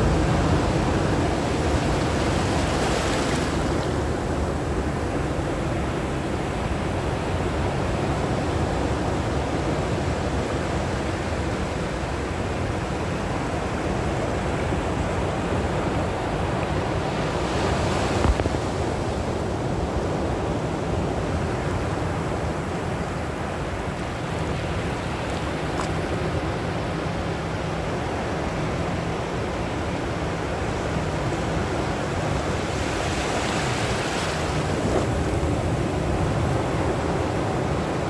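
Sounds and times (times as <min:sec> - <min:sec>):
sea surf washing in: 0:00.0 - 0:05.4, 0:30.4 - 0:38.0.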